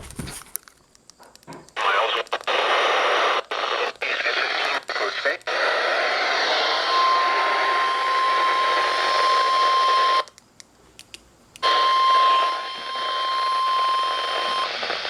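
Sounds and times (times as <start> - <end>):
radio static: 1.8 - 10.3, 11.6 - 15.0
steady high alarm tone: 6.5 - 10.3, 11.6 - 15.0.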